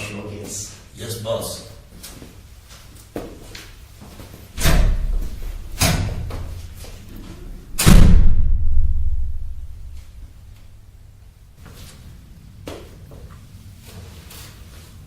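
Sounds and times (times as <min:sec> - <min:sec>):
heavy door slamming: 0:04.6 - 0:06.6, 0:07.5 - 0:10.0
low rumble: 0:07.5 - 0:10.4.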